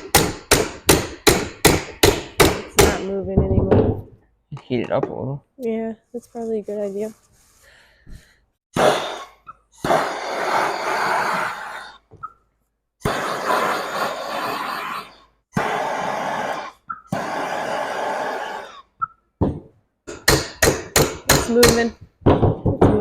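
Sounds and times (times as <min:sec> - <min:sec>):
torch hissing: 0:08.8 - 0:12.0, 0:13.0 - 0:18.8.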